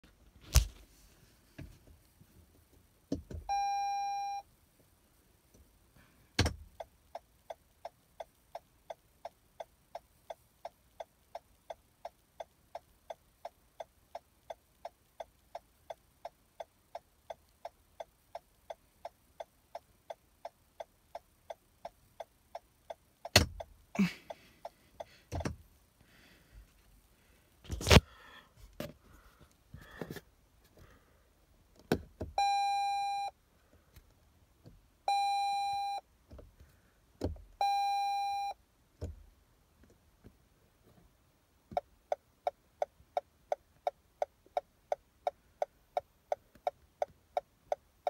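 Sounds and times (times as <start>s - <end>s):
turn signal ticking: 6.3s - 26.0s, 41.0s - 48.0s
turn signal stalk click: 6.4s - 25.6s, 41.6s - 48.0s.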